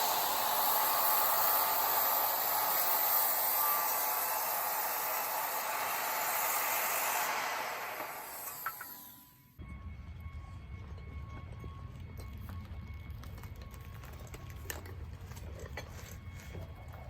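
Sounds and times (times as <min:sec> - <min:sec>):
power saw cutting wood: 0:00.0 - 0:09.6.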